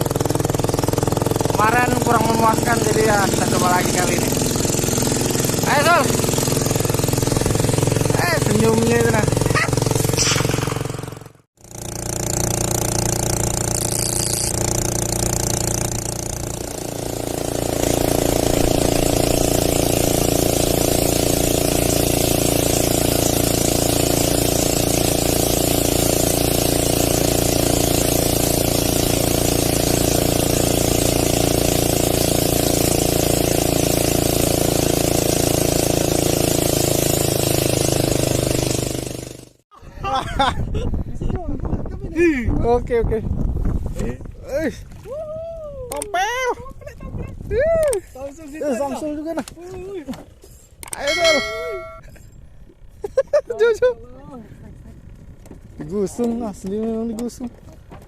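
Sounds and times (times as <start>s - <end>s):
boat engine running: 0.0s - 39.6s, 45.9s - 58.0s
water hiss: 13.6s - 38.9s
rushing wind: 39.8s - 45.9s, 46.6s - 47.9s.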